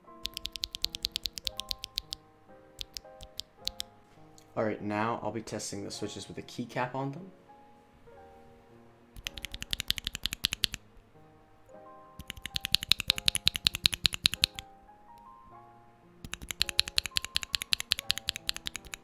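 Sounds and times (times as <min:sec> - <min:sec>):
background music: 0:00.0 - 0:19.0
mechanical keyboard keystrokes clacking: 0:00.1 - 0:02.2, 0:02.8 - 0:03.9, 0:09.2 - 0:10.9, 0:12.2 - 0:14.6, 0:16.2 - 0:19.0.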